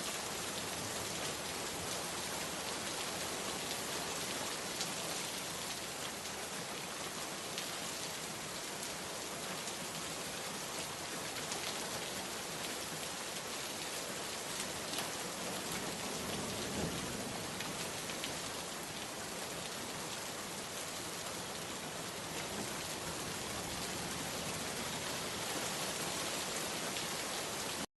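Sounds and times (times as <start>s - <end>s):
steady rain falling: 0.0s - 27.9s.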